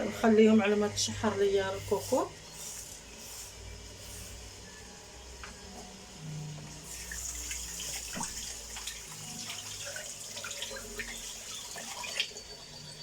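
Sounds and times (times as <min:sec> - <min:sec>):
water running from a tap: 0:06.8 - 0:13.0.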